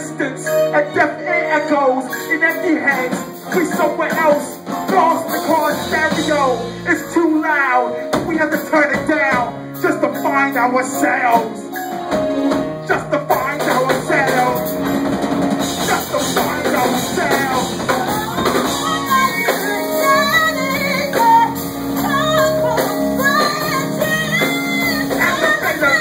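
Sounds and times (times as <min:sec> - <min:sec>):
live band music: 0:00.0 - 0:26.0
person singing: 0:15.7 - 0:26.0.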